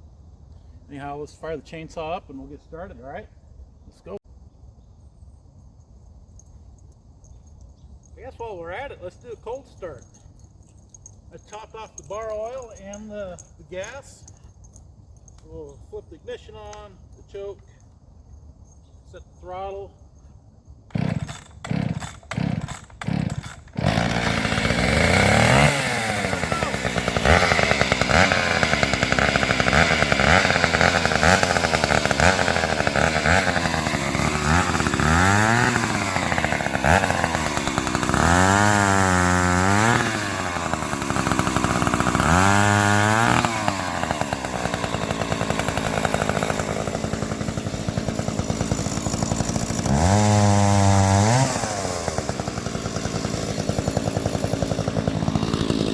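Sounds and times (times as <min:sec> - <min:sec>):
chainsaw engine running: 0:08.0 - 0:17.8, 0:20.9 - 0:55.9
chainsaw revving: 0:11.0 - 0:14.2, 0:20.9 - 0:55.9.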